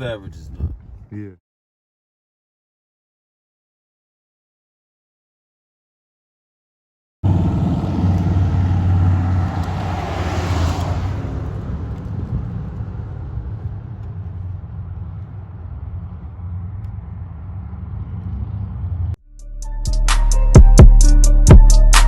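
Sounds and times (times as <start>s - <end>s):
vehicle engine rumbling: 7.2s - 19.2s.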